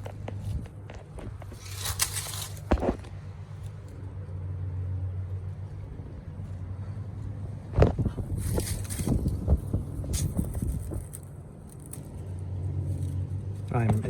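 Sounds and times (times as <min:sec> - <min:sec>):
sharp knocks and scrapes: 0:00.0 - 0:03.9, 0:07.7 - 0:14.0
low mechanical hum: 0:00.0 - 0:14.0.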